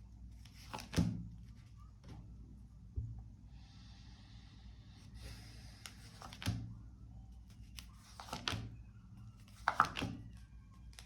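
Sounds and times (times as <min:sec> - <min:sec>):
low steady hum: 0:00.0 - 0:11.0
cards tapping and rustling: 0:09.5 - 0:10.2.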